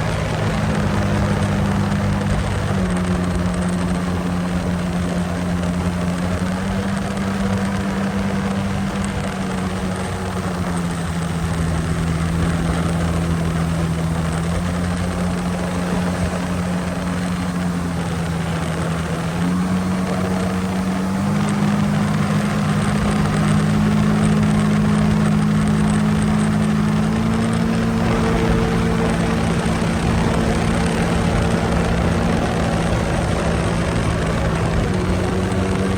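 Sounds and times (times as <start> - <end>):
jet ski engine droning: 0.0 - 35.9.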